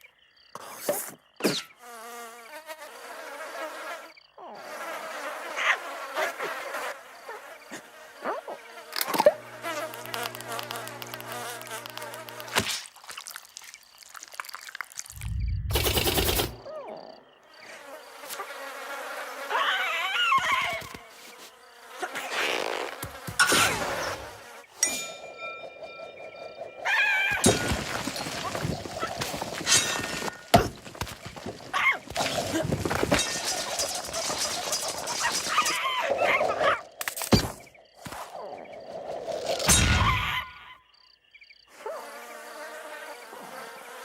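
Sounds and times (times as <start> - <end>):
cartoon fly buzzing: 1.4 - 12.9, 15.1 - 24.8, 41.7 - 44.0
steady low hum: 15.2 - 16.6.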